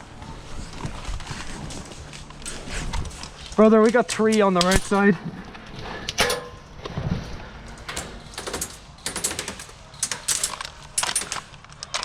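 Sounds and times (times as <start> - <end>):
airsoft guns firing bursts: 8.4 - 10.2.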